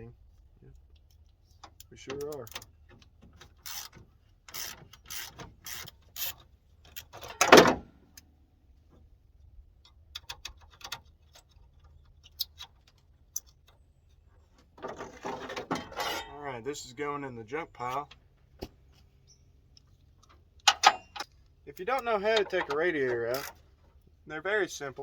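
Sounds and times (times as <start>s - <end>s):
ratchet wrench strokes: 3.6s - 7.2s, 23.3s - 23.6s.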